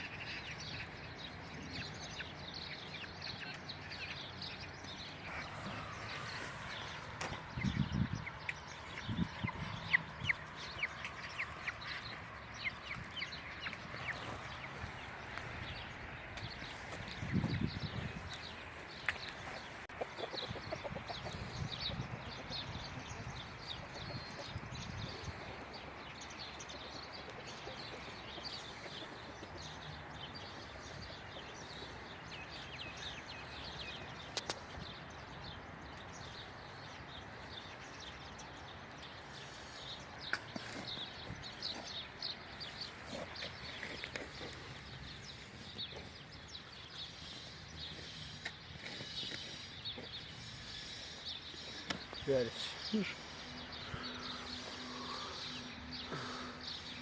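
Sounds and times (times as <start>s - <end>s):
chickens clucking: 0.0s - 32.3s.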